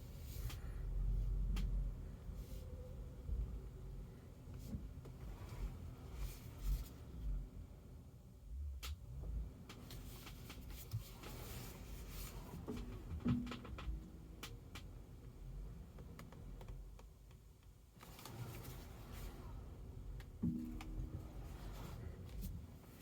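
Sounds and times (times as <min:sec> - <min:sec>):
low car rumble: 0:00.0 - 0:23.0
light clicks and taps: 0:00.3 - 0:01.9, 0:08.8 - 0:18.6.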